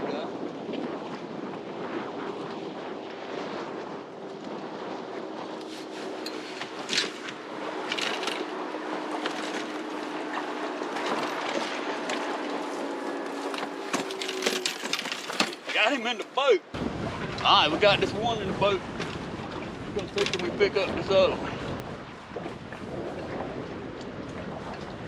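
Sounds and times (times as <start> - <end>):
choppy water: 0.0 - 25.0
strong wind: 0.0 - 25.0
splashes and knocks: 4.2 - 16.1.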